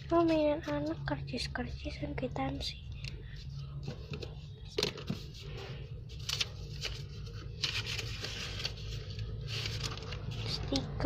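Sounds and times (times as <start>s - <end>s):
low steady hum: 0.0s - 11.0s
paper and plastic wrappers rustling: 3.6s - 11.0s.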